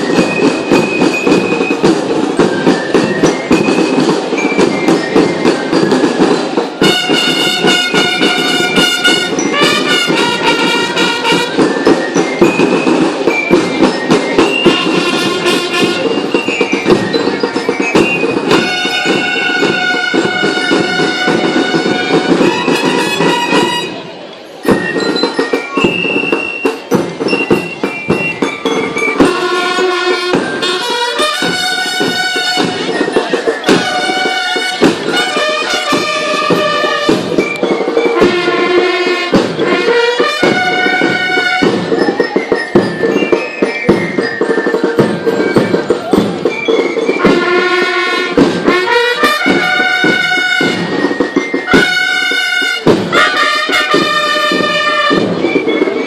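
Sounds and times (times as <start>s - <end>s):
steady drumming: 0.0s - 56.0s
brass band playing chords: 5.7s - 12.7s, 14.3s - 24.3s, 28.9s - 42.0s, 47.0s - 56.0s.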